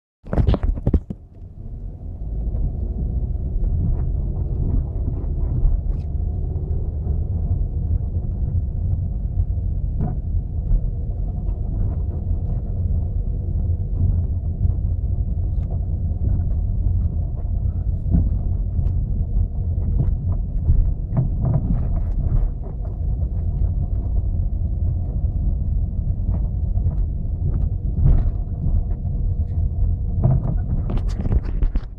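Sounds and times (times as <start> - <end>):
low rumble of moving car: 0.2 - 31.9
dull knocks from steering: 19.8 - 23.0, 30.2 - 31.9.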